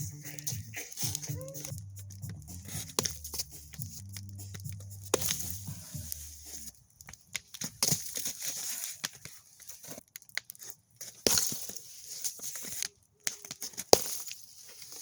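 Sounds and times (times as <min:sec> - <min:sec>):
ice cracking and crunching: 0:05.2 - 0:15.0.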